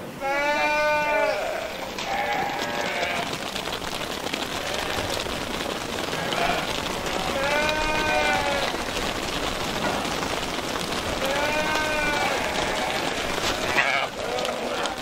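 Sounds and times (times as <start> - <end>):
sheep bleating: 0.2 - 3.4, 4.5 - 5.2, 6.1 - 8.9, 11.2 - 15.0.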